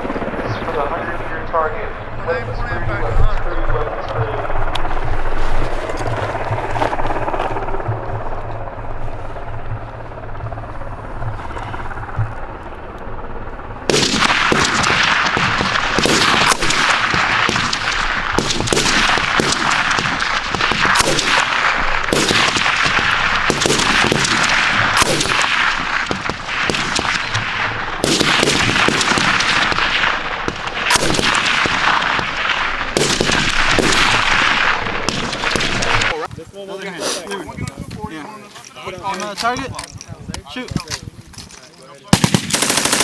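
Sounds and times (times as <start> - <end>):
machine gun firing bursts: 13.9 - 36.2, 42.1 - 43.0.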